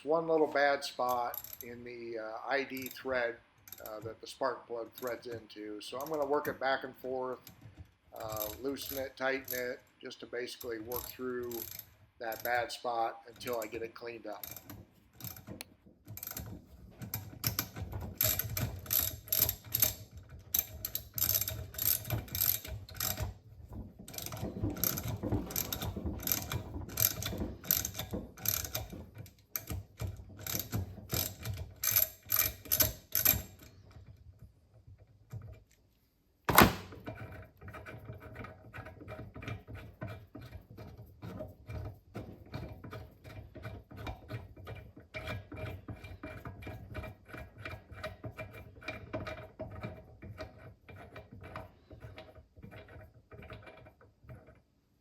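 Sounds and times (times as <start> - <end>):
loud sharp knock: 36.5 - 36.9.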